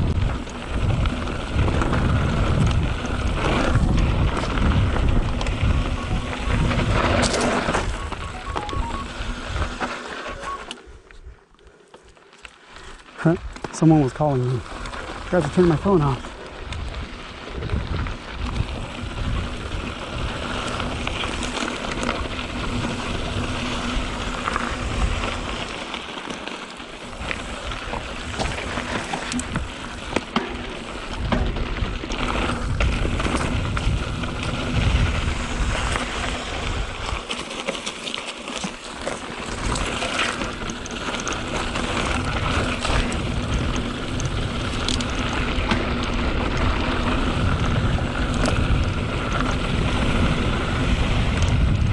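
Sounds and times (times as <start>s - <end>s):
wind buffeting microphone: 0.0s - 8.2s, 16.0s - 21.5s, 30.8s - 37.2s, 39.5s - 51.9s
bike rattling over bumps: 0.0s - 8.3s, 12.7s - 51.9s
tyres on loose ground: 0.0s - 51.9s.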